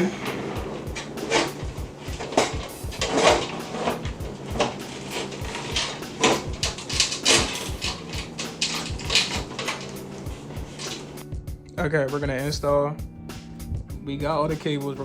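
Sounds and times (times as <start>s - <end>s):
computer parts clicking and scraping: 0.0s - 11.2s.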